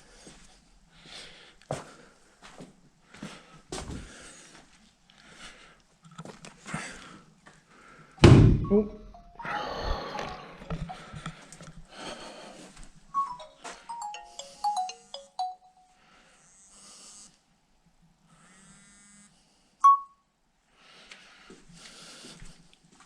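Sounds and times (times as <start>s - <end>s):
phone ringtone notes: 8.6s - 11.5s, 13.2s - 16.0s, 19.8s - 20.1s.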